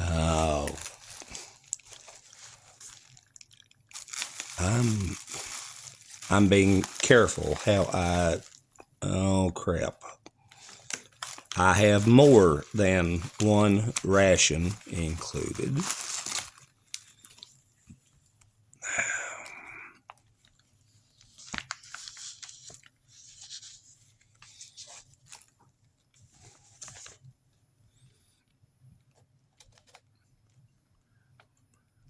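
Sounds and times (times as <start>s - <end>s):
plastic packaging crinkling: 0.0s - 17.6s, 21.2s - 25.6s.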